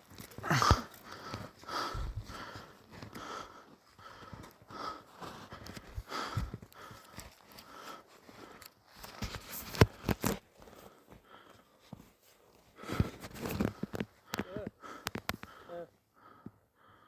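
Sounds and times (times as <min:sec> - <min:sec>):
person breathing hard: 0:00.3 - 0:08.8, 0:12.8 - 0:17.0.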